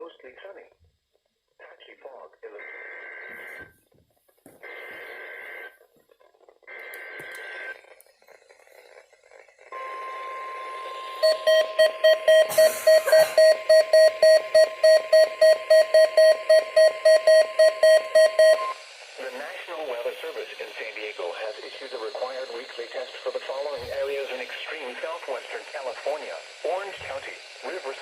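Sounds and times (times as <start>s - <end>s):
receiver alarm beeping loudly: 9.8s - 28.0s.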